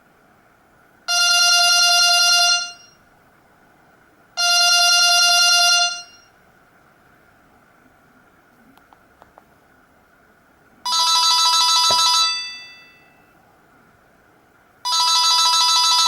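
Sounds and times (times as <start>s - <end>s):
electronic phone ring: 1.1s - 3.0s, 4.4s - 6.3s, 10.9s - 13.3s, 14.8s - 16.0s.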